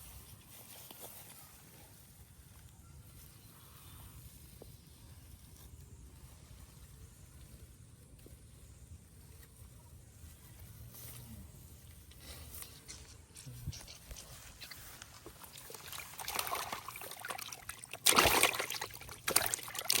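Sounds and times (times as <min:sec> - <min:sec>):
water sloshing and splashing: 0:14.4 - 0:20.0
loud water splash: 0:15.4 - 0:20.0.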